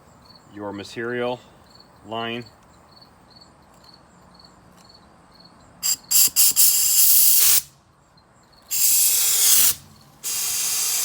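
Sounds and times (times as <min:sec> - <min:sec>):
sandblast gun hissing: 0:05.8 - 0:07.7, 0:08.7 - 0:11.0.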